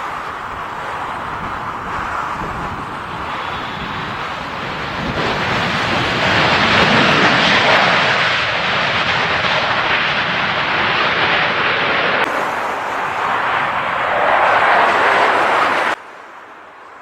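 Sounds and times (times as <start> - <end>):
jet airliner passing close: 0.0 - 17.0.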